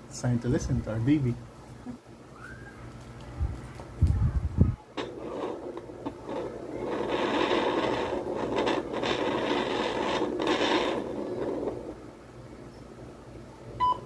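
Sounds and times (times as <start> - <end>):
scratchy rubbing from doppler speaker: 5.0 - 12.0.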